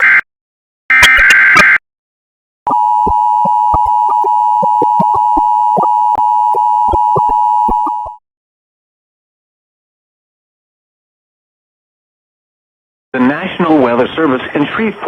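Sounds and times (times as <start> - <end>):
two-tone alarm: 2.7 - 8.2
crackling clicks: 3.0 - 8.2.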